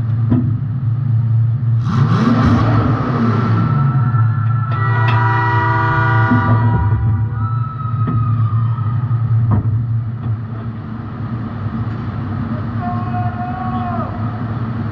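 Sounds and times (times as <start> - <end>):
sharp knocks: 0.3 - 0.6.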